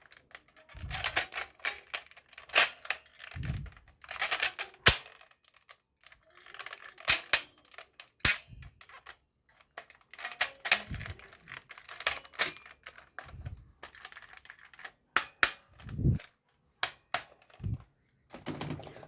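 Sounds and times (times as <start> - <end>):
airsoft gun snaps and shots: 4.2 - 5.2, 8.2 - 8.7
mechanical clicks and rattles: 9.7 - 16.2.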